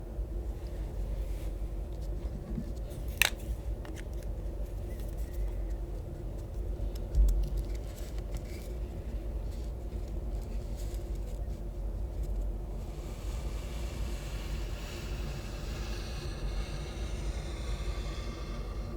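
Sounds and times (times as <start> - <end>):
steady low rumble: 0.0 - 18.9
highlighter scratching on paper: 12.8 - 18.9.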